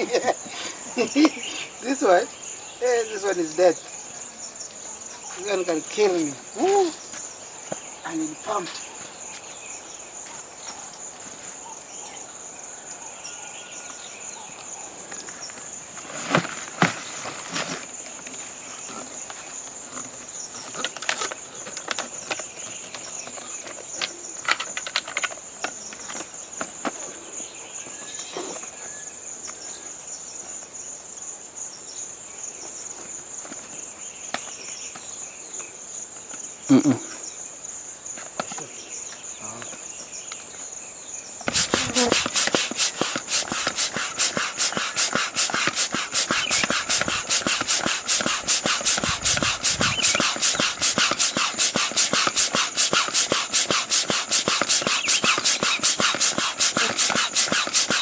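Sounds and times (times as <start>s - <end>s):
crickets chirring: 0.0s - 58.0s
fast repeated strokes: 41.5s - 58.0s.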